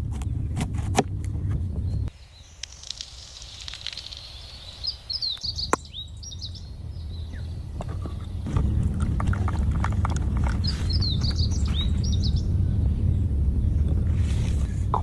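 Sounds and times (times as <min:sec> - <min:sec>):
birds chirping: 0:00.0 - 0:15.0
low rumble: 0:06.2 - 0:15.0.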